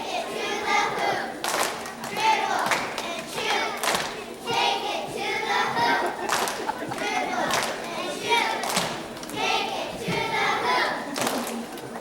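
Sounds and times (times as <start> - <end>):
girls chanting a cheer: 0.0 - 11.5
sharp claps or stomps: 1.4 - 4.2, 6.3 - 7.8, 8.6 - 9.1.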